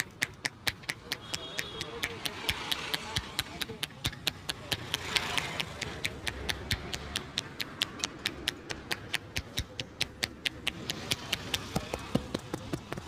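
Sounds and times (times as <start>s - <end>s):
hand taps of massage: 0.0s - 13.0s.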